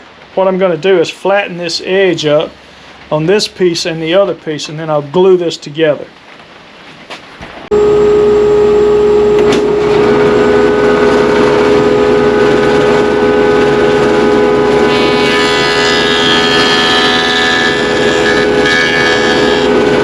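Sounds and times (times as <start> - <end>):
jointer motor hum and whine: 7.7 - 20.0
rough higher cutting sound: 9.2 - 20.0.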